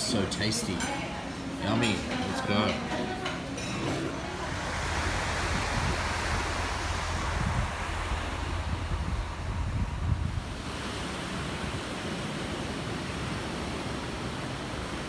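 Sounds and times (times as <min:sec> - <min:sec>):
wind buffeting microphone: 0:04.1 - 0:12.2
ocean surf on a beach: 0:04.1 - 0:15.0.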